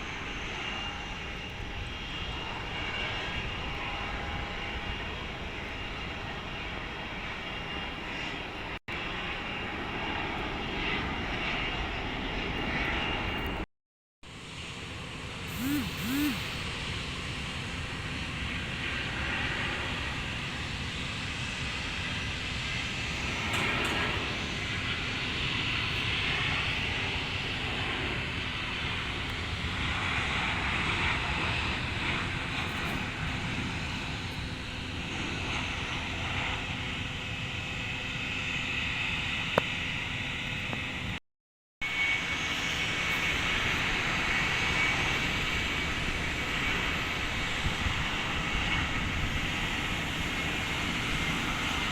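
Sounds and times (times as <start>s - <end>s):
jet airliner engines rushing: 14.3s - 41.2s, 41.9s - 51.9s.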